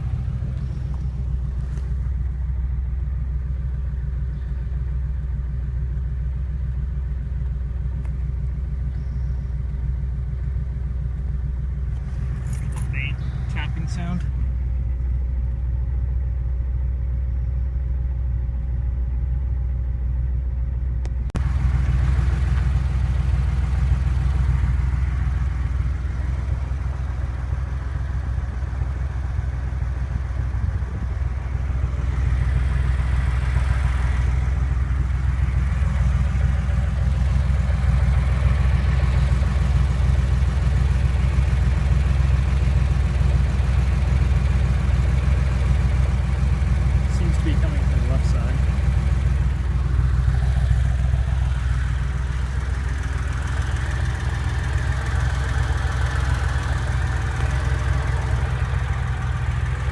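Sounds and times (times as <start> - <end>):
car engine running: 0.0 - 59.9
engine tapping: 0.0 - 59.9.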